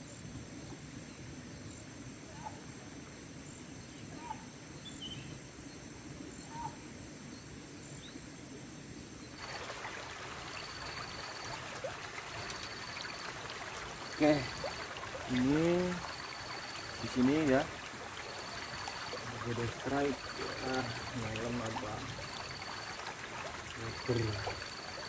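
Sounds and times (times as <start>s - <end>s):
high insect drone: 0.0s - 25.0s
trickling water hiss: 0.0s - 25.0s.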